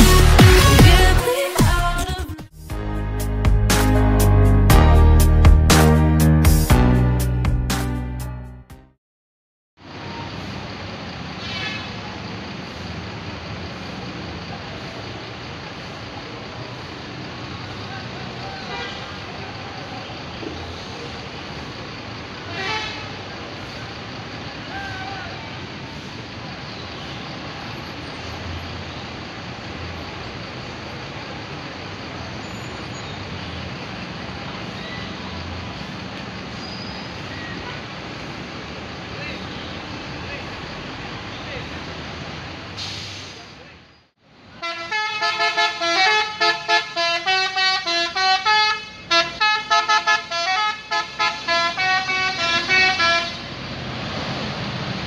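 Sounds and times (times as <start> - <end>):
background music: 0.0 - 8.9
vehicle engines running: 9.8 - 55.0.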